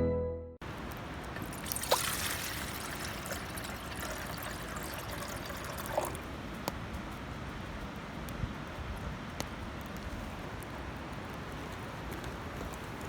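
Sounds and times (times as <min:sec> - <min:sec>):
water trickling: 0:00.6 - 0:06.3.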